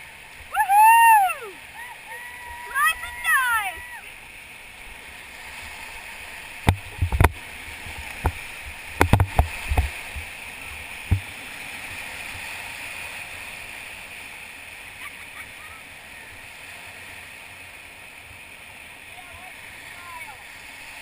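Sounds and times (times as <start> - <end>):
whitewater river rushing: 0.0 - 21.0
knocks and thumps: 6.7 - 7.4, 9.0 - 9.9, 11.0 - 11.3.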